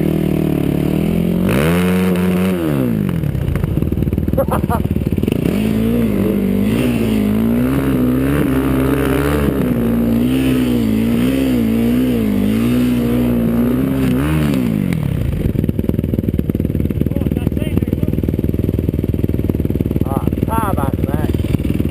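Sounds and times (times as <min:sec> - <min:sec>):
quad engine revving: 0:00.0 - 0:21.9.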